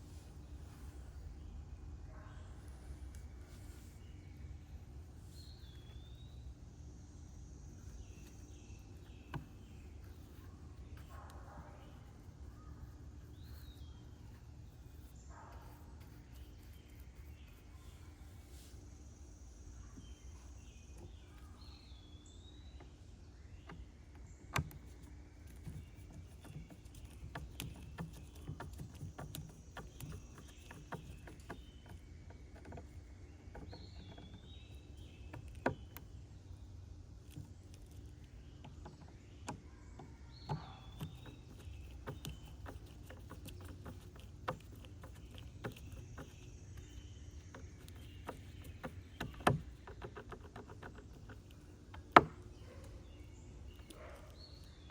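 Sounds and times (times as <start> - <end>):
faint steady hum: 0.0 - 54.9
light clicks and taps: 8.0 - 17.6, 22.7 - 54.9.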